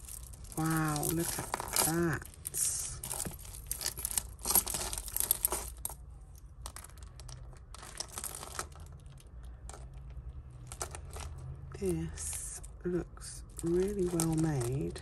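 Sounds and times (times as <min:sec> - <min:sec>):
jewellery clinking: 0:00.0 - 0:15.0
plastic bags crinkling: 0:00.0 - 0:15.0.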